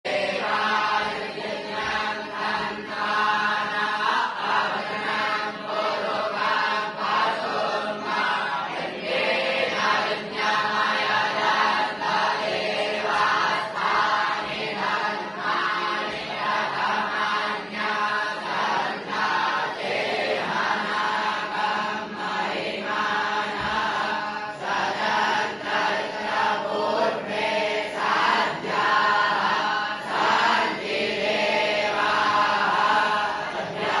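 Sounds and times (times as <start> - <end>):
students chanting in unison: 0.0 - 34.0.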